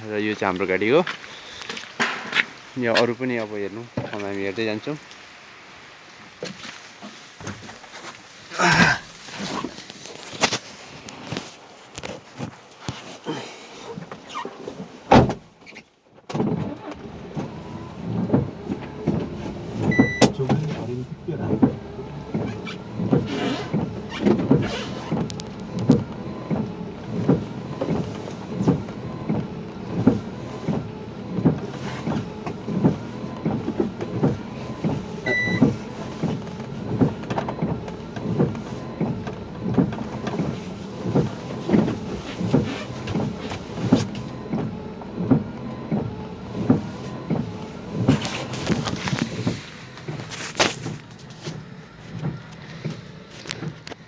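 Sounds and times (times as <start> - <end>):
vehicle engine rattling and knocking: 14.0 - 54.0
short high beeps: 19.9 - 20.4, 35.3 - 35.7.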